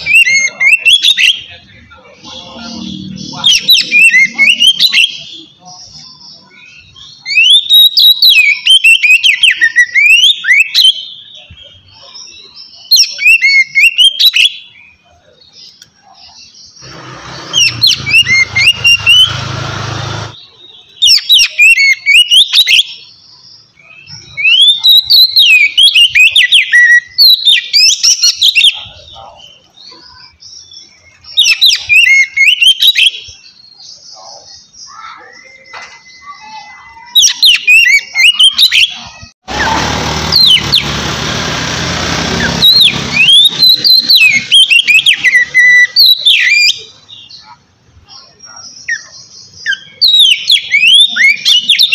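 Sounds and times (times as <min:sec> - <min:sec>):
bird singing whistles: 0:03.4 - 0:14.6, 0:17.5 - 0:19.4, 0:20.4 - 0:23.1, 0:23.8 - 0:39.2, 0:48.4 - 0:51.9.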